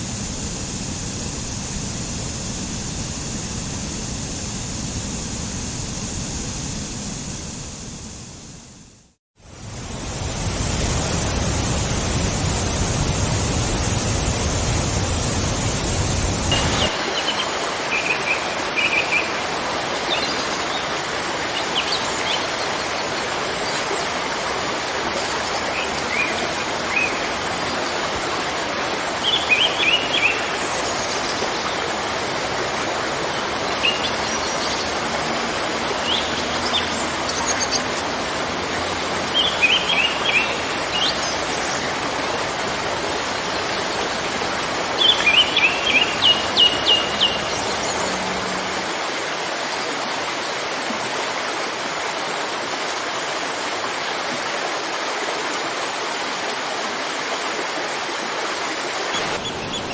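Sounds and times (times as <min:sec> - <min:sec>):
waterfall rushing: 0:09.4 - 0:59.9
small birds chirping: 0:44.8 - 0:48.2.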